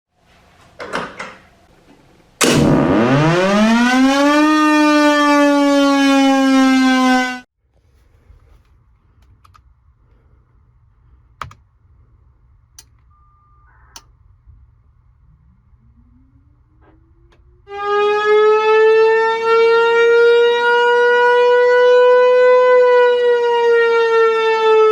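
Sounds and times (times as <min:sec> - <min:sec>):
warning siren winding up: 0:02.4 - 0:07.5, 0:16.4 - 0:24.9.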